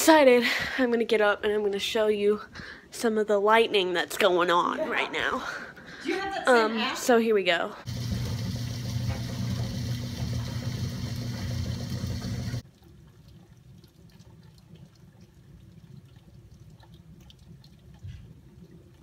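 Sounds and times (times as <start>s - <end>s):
low hum: 7.9s - 12.7s.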